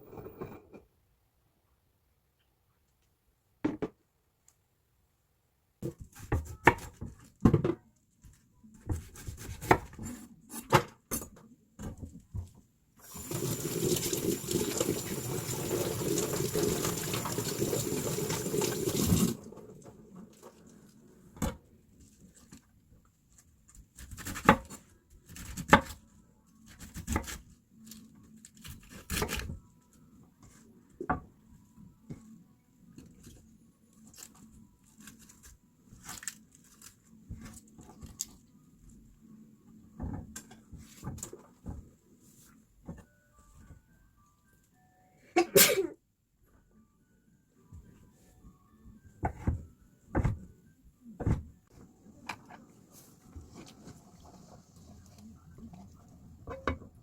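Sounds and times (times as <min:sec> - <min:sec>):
tap running: 0:13.1 - 0:19.4.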